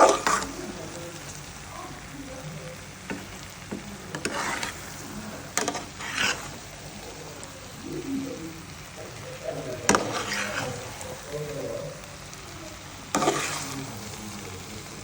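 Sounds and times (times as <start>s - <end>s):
utensil scraping and knocking pan: 0.0s - 0.5s, 3.1s - 6.6s, 9.8s - 11.0s, 13.1s - 13.8s
food sizzling in a pan: 0.0s - 15.0s.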